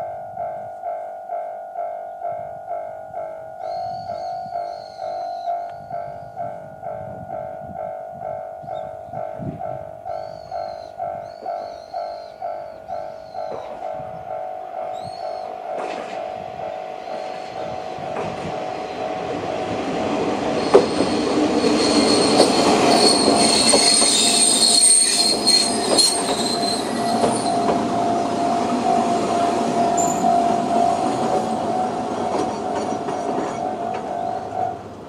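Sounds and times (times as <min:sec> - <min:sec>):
level crossing warning bell: 0:00.0 - 0:35.0
diesel train passing: 0:08.6 - 0:35.0
wheels squealing: 0:20.5 - 0:28.2.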